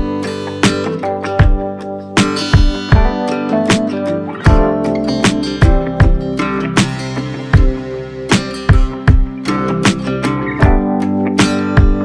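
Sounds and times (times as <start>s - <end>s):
background music with melodic notes: 0.0s - 12.0s
heavy thumping beat: 0.0s - 12.0s.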